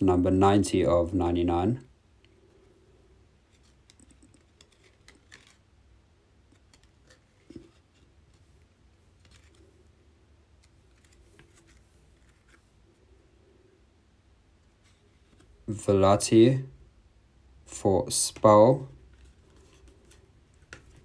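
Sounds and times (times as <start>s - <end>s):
trading cards shuffling: 3.5s - 5.7s, 6.4s - 12.8s, 19.0s - 21.0s.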